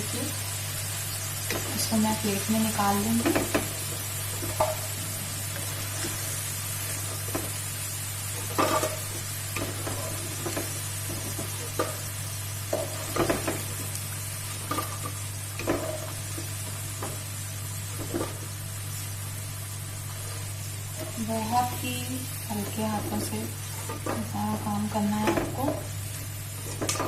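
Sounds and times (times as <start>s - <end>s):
food deep-frying in oil: 0.0s - 27.0s
metal spoon scraping a pan: 8.4s - 12.1s.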